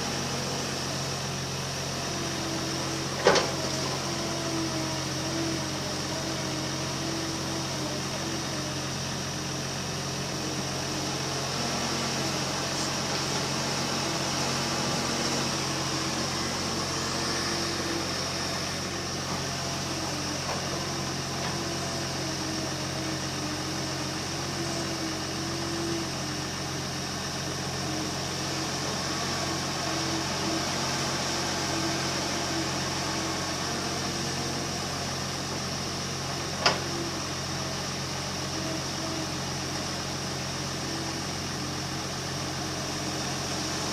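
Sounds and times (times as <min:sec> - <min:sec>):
excavator diesel engine running: 0:00.0 - 0:43.9.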